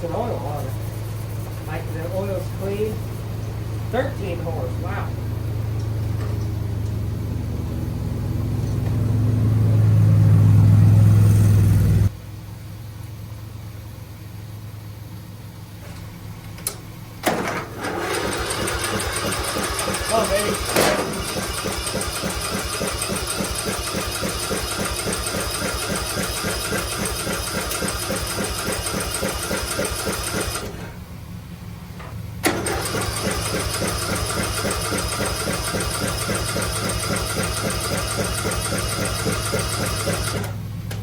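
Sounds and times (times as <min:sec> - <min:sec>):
electric starter cranking engine: 0:16.6 - 0:31.0, 0:32.4 - 0:41.0.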